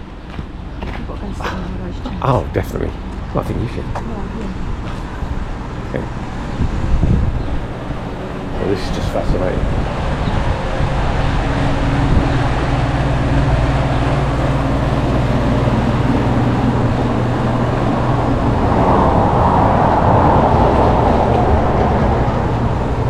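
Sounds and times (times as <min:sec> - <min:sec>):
vehicle engine humming: 0:00.0 - 0:23.0
rushing noise: 0:04.6 - 0:23.0.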